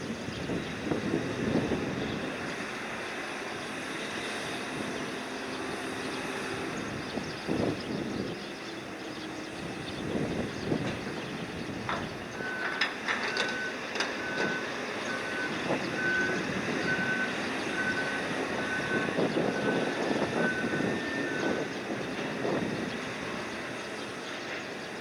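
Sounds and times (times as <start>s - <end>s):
machinery drone: 0.0s - 25.0s
machinery warning beeper: 12.3s - 21.8s.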